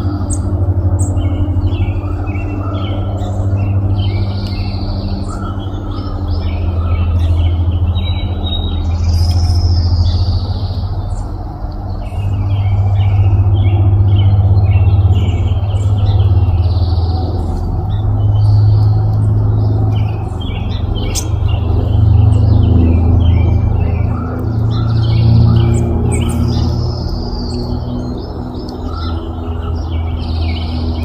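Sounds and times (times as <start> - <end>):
loud low hum: 0.0 - 31.0
songbirds chirping: 0.0 - 31.0.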